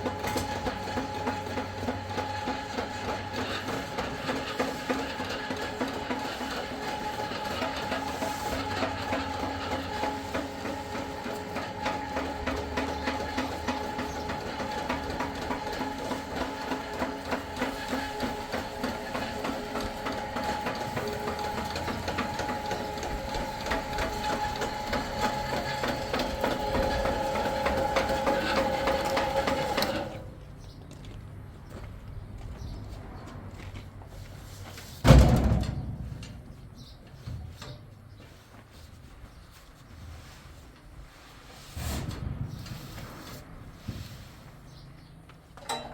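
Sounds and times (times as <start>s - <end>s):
machine rattling: 0.0s - 30.2s.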